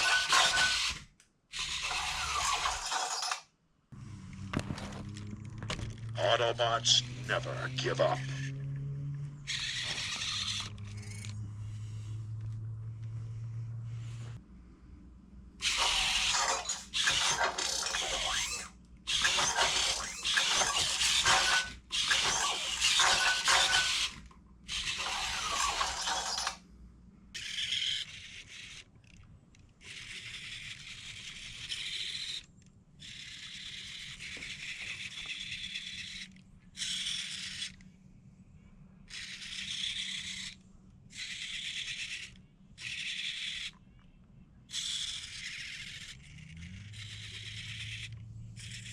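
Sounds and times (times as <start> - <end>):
robot toy servo motors whirring: 0.0 - 3.5, 9.4 - 12.1, 15.6 - 26.6, 27.4 - 37.9, 39.1 - 43.9, 44.7 - 48.9.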